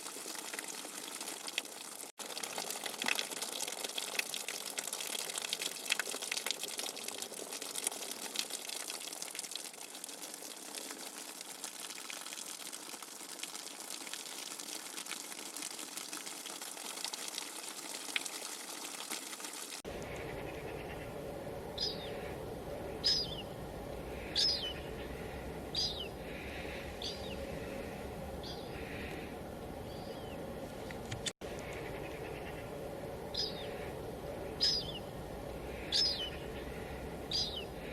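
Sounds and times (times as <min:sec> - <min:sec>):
rushing splashing water: 0:00.0 - 0:20.1.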